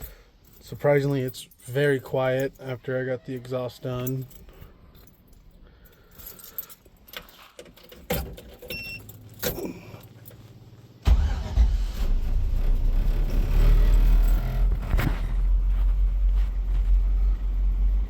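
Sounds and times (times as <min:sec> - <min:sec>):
light jangling and clinking: 0:00.0 - 0:10.8
engine rumbling: 0:04.0 - 0:18.0.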